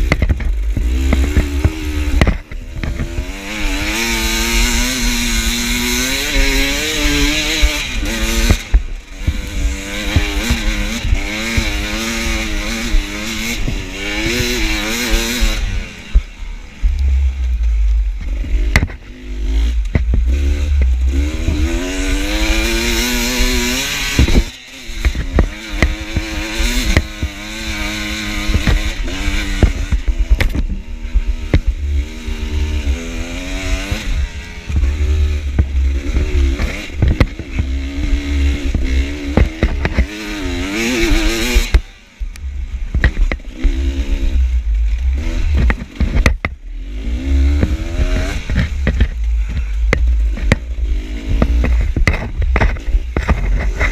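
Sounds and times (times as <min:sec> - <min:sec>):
dirt bike engine revving: 0:00.0 - 0:53.9
knocks and rattles: 0:42.7 - 0:46.6, 0:47.2 - 0:53.9.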